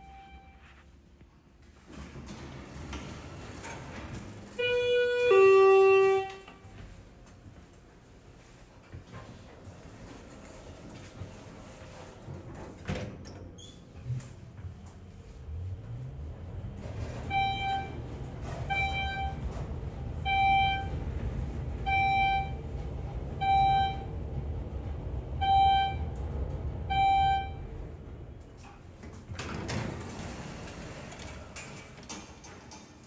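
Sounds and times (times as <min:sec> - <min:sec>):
elevator short beeps: 0:00.0 - 0:00.7, 0:04.6 - 0:06.5, 0:16.9 - 0:27.9
elevator stopping rush: 0:01.9 - 0:06.3, 0:13.4 - 0:32.7
elevator humming: 0:13.5 - 0:32.6.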